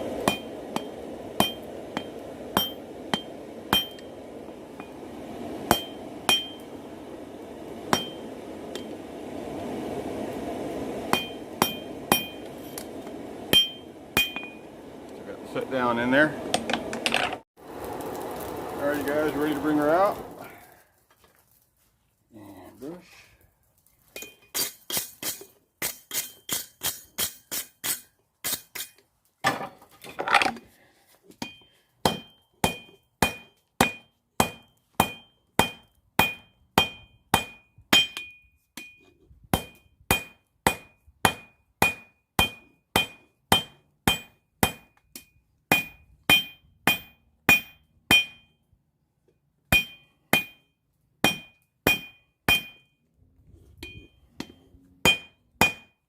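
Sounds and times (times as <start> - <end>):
hammer striking anvil: 0.2 - 4.0, 5.7 - 6.6, 7.9 - 8.2, 11.1 - 12.8, 13.5 - 14.6, 31.4 - 39.0, 39.6 - 48.5, 49.7 - 52.9, 53.8 - 56.0.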